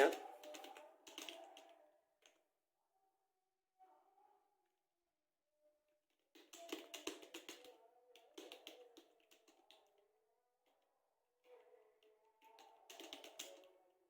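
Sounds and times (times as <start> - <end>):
typing on computer keyboard: 0.0 - 1.8, 6.3 - 10.0, 12.4 - 13.8.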